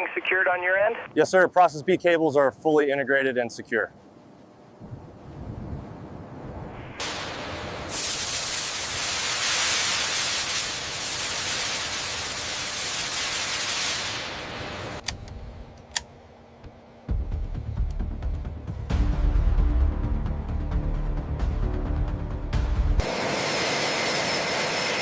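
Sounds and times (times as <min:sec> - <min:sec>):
loud rushing hiss: 0:06.4 - 0:15.0, 0:23.0 - 0:25.0.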